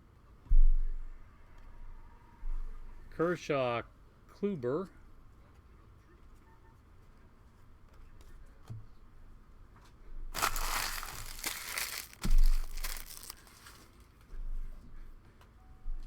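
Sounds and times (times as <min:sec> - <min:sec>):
packaging crinkling: 0:10.4 - 0:14.0.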